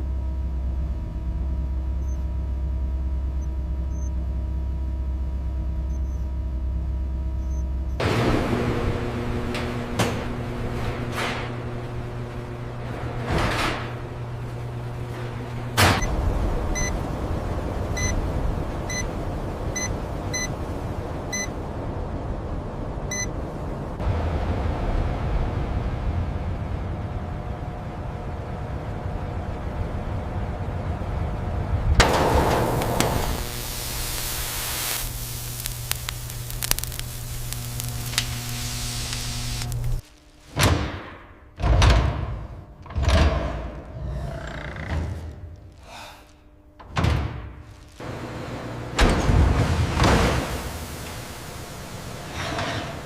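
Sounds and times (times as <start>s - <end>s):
factory machinery rumble: 0.0s - 53.0s
even hiss: 32.0s - 40.5s.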